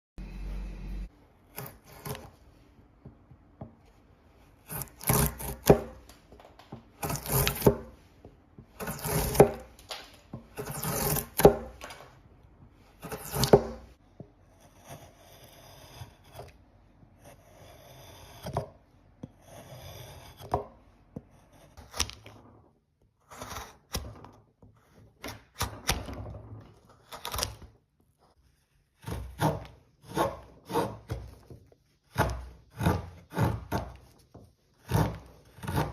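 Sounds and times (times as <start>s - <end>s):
scraping wood by hand: 29.0s - 35.9s.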